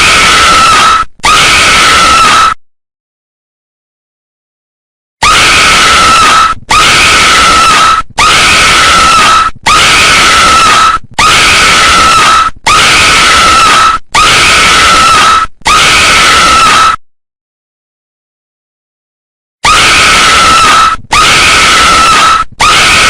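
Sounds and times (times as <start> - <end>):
girl's shrill horror scream: 0.0 - 2.6, 5.2 - 17.0, 19.6 - 23.0.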